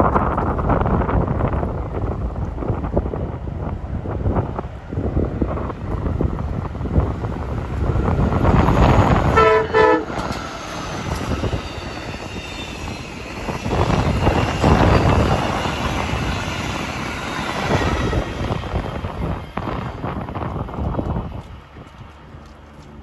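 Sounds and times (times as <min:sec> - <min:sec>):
train rumble and wheel noise: 0:00.0 - 0:23.0
train horn blasts: 0:09.1 - 0:10.3.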